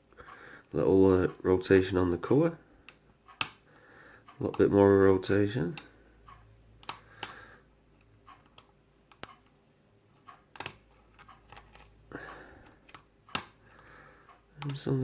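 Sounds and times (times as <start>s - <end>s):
lock pick clicking and scraping: 10.5s - 12.0s.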